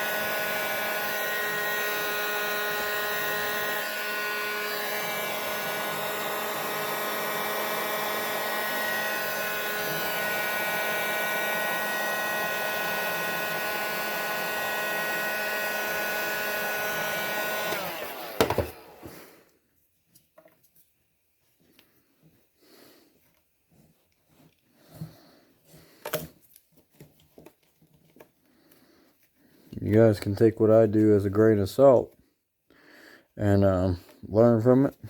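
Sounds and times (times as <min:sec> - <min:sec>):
hot-air blower motor whine: 0:00.0 - 0:19.4
knock: 0:18.4 - 0:18.8.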